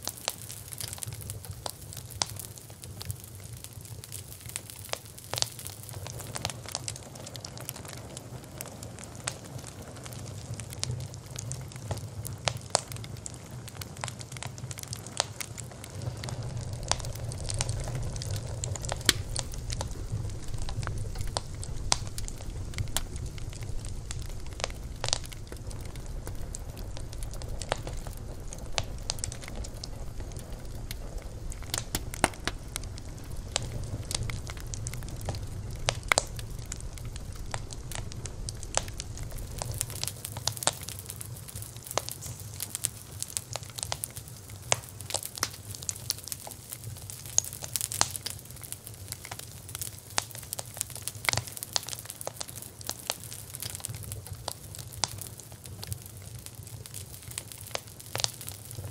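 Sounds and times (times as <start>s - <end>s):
wood fire crackling and popping: 0.0s - 58.9s
low rumble: 15.6s - 41.6s.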